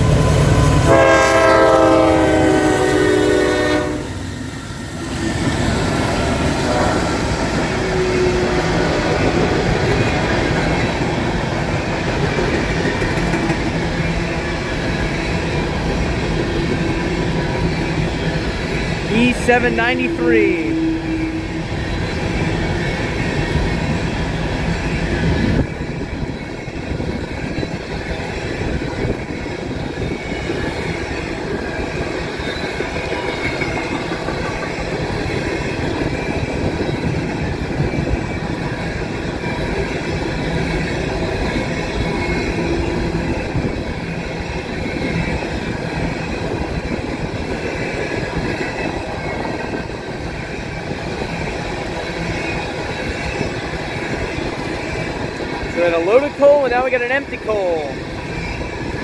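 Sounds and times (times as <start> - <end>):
train wheels clicking over rail joints: 12.0 - 14.4.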